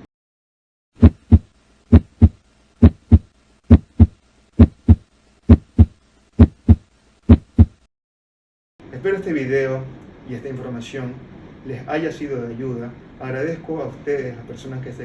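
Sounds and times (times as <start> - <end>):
heartbeat thumps: 1.0 - 7.9.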